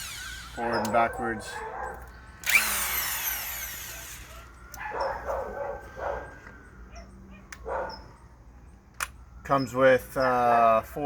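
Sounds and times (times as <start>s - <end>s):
impact wrench motor whine: 0.0s - 1.0s, 2.4s - 4.6s.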